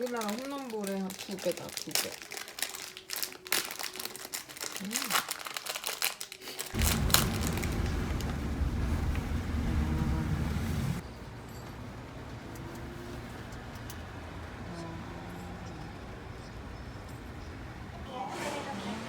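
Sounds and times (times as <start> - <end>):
steady hum: 6.8 - 11.0
vehicle engine rumble: 6.8 - 18.1.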